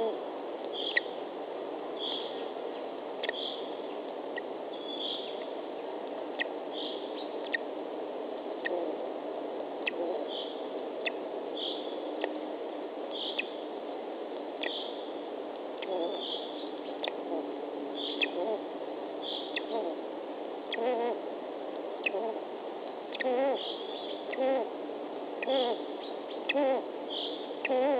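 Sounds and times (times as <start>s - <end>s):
steady background hiss: 0.0s - 27.9s.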